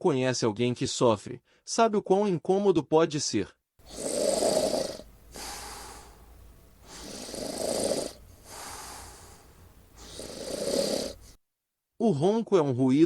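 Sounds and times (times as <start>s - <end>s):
person snoring: 3.8s - 11.4s.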